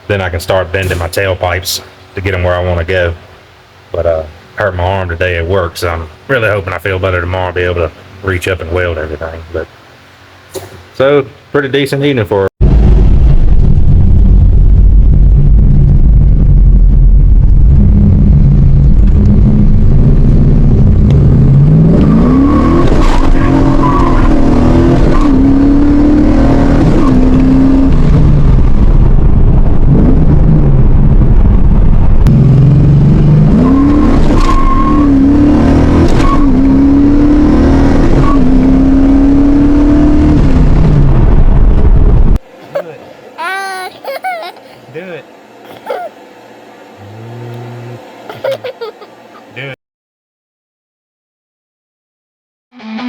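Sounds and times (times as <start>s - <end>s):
car engine revving: 17.5s - 28.9s, 32.2s - 42.0s, 46.8s - 48.3s.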